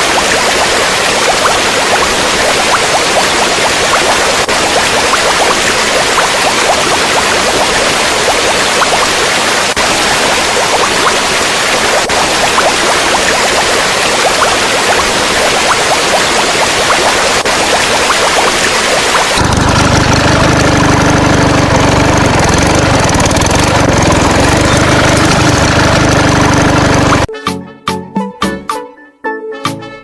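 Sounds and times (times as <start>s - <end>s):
idling engine drone: 19.4s - 27.3s
music: 27.3s - 30.0s.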